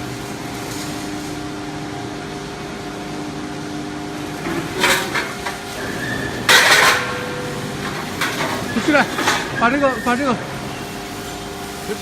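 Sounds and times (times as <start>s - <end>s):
plate rolling machine humming: 0.0s - 12.0s
metal clatter: 4.4s - 5.6s, 6.5s - 9.6s.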